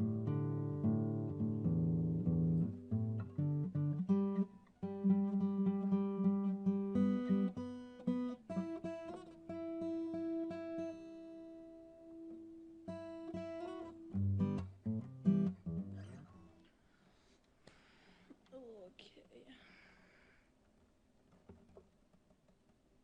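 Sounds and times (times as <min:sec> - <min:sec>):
acoustic guitar playing: 0:00.0 - 0:16.6.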